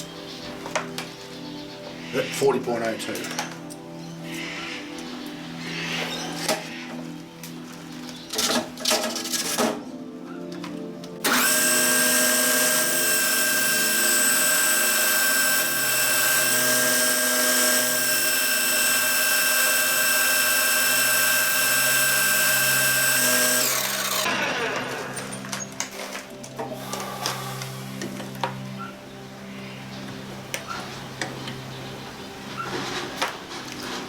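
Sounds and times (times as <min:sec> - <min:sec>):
lathe spindle whining: 0:11.2 - 0:25.4.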